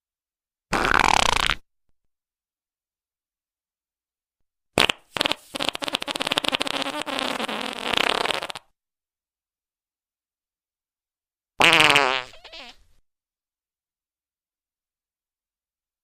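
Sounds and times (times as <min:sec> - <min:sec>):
fluttering fart: 0:00.7 - 0:01.6, 0:04.8 - 0:08.7, 0:11.6 - 0:12.8.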